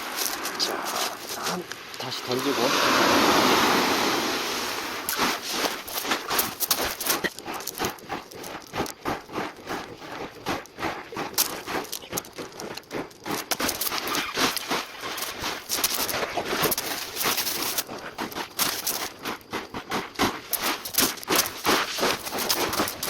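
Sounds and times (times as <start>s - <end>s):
rapid irregular clicking: 5.0s - 23.0s.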